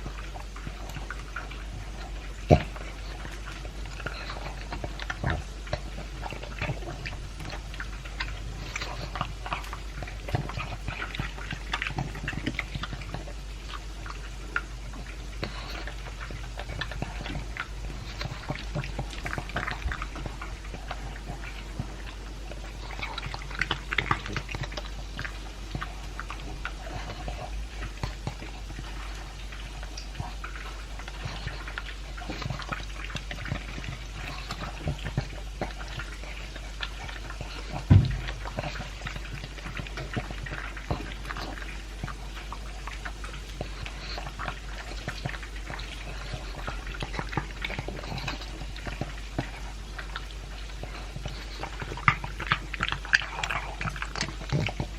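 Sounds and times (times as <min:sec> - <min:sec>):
dog crunching and chewing food: 0:00.0 - 0:54.9.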